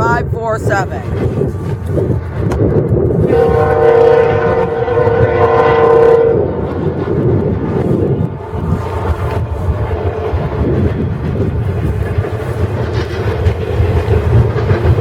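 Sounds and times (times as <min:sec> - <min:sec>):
low rumble: 0:00.0 - 0:15.0
locomotive air horn blast: 0:03.2 - 0:06.6.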